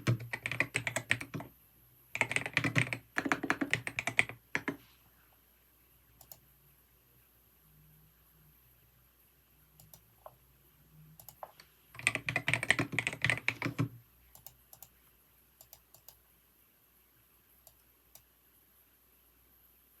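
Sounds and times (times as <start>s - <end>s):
computer keyboard typing: 0.0s - 1.5s, 2.2s - 4.8s, 11.2s - 14.9s, 15.6s - 16.2s.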